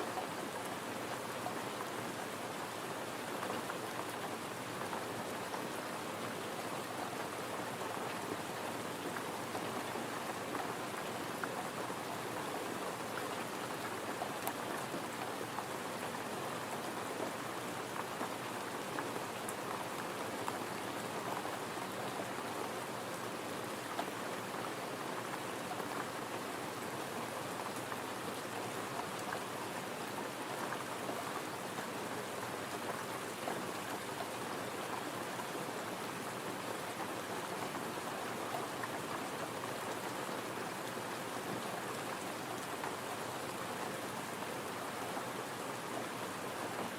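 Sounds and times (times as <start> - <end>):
gentle rain hiss: 0.0 - 46.9.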